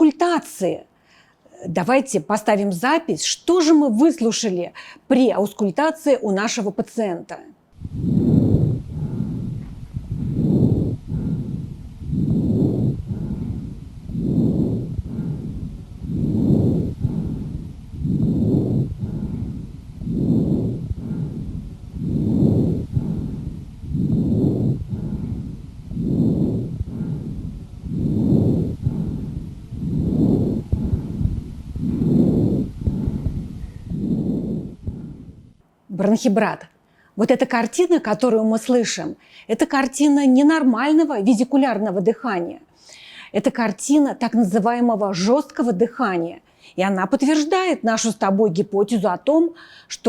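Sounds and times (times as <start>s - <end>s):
harsh breathing through stethoscope: 49.6s - 49.9s.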